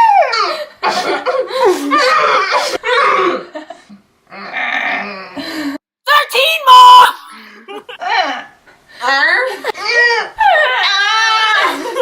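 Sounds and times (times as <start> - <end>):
girl making vocal sound effect: 6.1 - 7.5.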